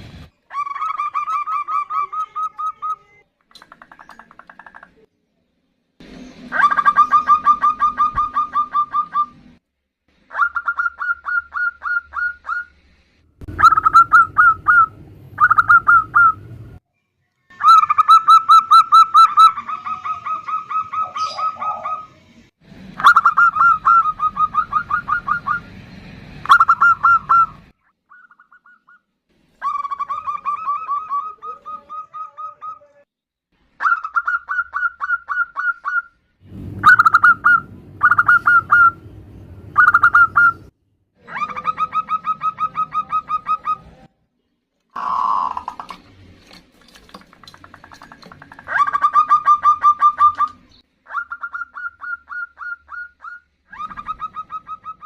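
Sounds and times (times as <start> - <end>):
doves calling staccato notes: 13.5 - 16.5.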